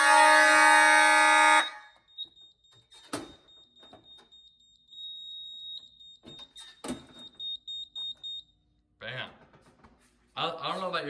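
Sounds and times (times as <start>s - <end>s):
loud buzzy alarm siren: 0.0s - 6.9s
faint high steady beep: 1.2s - 8.6s.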